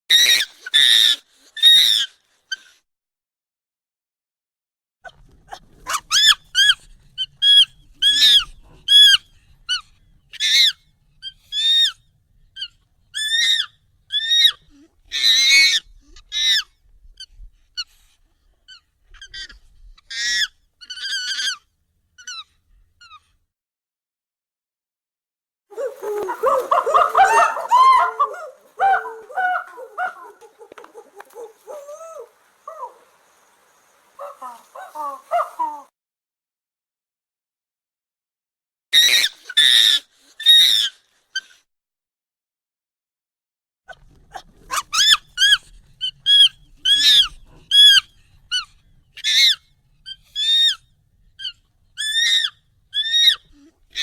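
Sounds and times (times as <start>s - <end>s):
monkey squealing and chirping: 0.1s - 2.6s, 5.9s - 9.8s, 10.4s - 12.0s, 12.6s - 16.7s, 18.7s - 21.6s, 25.8s - 33.0s, 39.0s - 41.5s, 44.7s - 50.8s, 51.4s - 54.0s.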